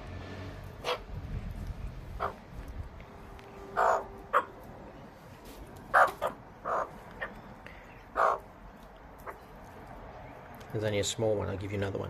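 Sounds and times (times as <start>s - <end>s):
magpies squawking: 0.8s - 1.1s, 2.1s - 2.4s, 3.7s - 5.0s, 5.9s - 8.6s, 9.2s - 9.5s.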